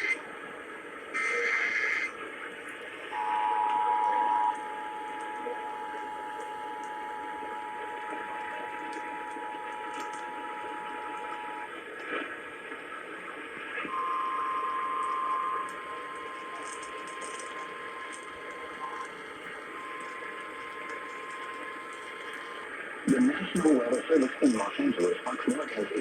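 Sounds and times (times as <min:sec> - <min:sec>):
radio static hiss: 0:00.0 - 0:26.0
weather radio alarm tone: 0:01.2 - 0:02.1, 0:03.1 - 0:11.7, 0:13.9 - 0:26.0
click: 0:09.9 - 0:10.2
two-tone attention signal: 0:13.9 - 0:16.6.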